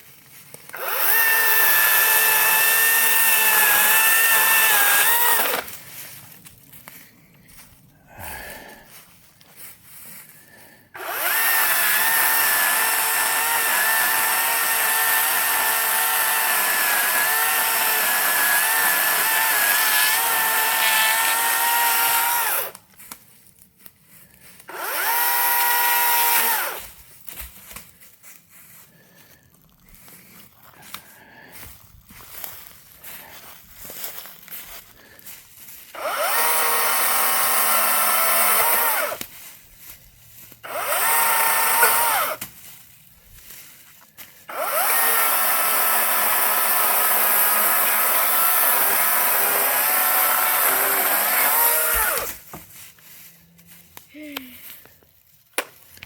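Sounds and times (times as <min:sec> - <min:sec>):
electric chainsaw motor whine: 0:00.7 - 0:05.7, 0:11.0 - 0:22.8, 0:24.7 - 0:26.9, 0:36.0 - 0:39.3, 0:40.6 - 0:42.4, 0:44.5 - 0:52.5.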